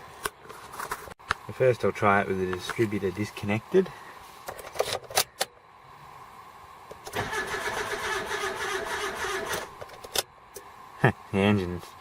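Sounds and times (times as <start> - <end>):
car starter motor cranking engine: 7.0 - 9.8.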